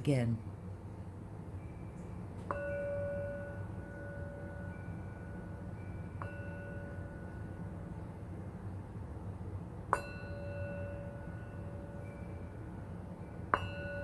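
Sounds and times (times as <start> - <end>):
steady low hum: 0.0 - 14.0
metal chime ringing: 1.6 - 8.3, 9.9 - 14.0.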